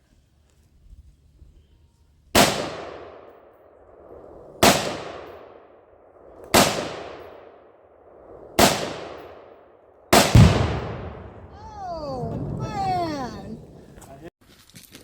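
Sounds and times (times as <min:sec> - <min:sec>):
gunshots with long echo: 0:02.4 - 0:14.0.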